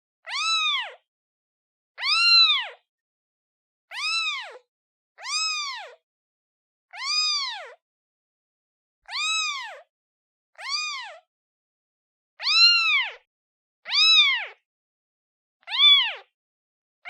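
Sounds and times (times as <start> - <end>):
kitten meowing: 0.2 - 1.0, 2.0 - 2.8, 3.9 - 6.0, 6.9 - 7.8, 9.1 - 9.9, 10.6 - 11.3, 12.4 - 13.3, 13.9 - 14.6, 15.7 - 16.3.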